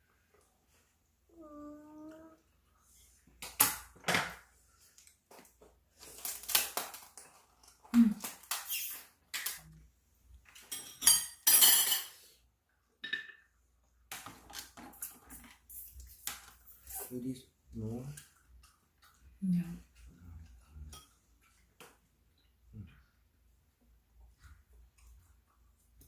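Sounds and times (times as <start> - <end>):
dishes and cutlery clinking: 10.5 - 12.3, 13.0 - 13.5, 20.8 - 21.6.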